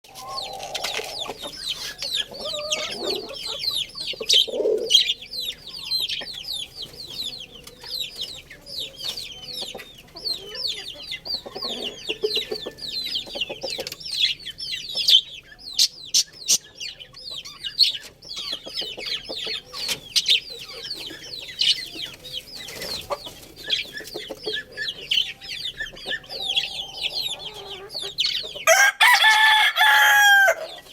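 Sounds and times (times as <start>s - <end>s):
chickens clucking: 0.0s - 30.9s
rooster crowing: 28.6s - 30.8s.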